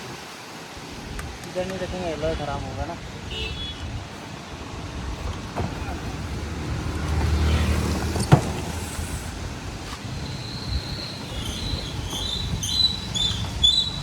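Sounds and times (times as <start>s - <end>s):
passing vehicle rumble: 2.0s - 14.0s.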